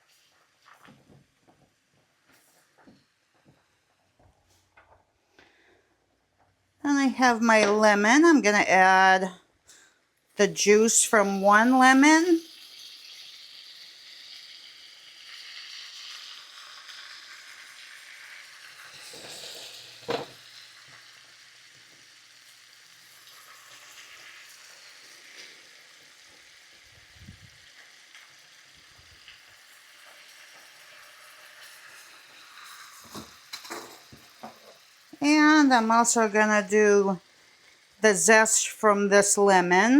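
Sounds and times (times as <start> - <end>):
sauce sizzling in a skillet: 9.7 - 39.9.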